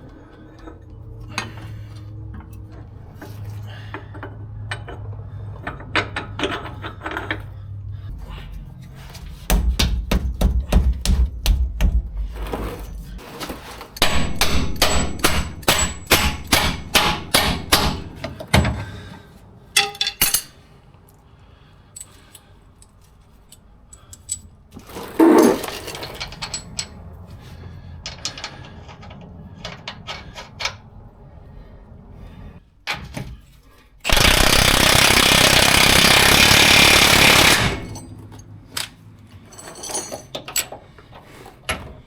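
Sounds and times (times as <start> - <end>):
hammer striking steel: 14.0 - 18.3, 19.8 - 20.6.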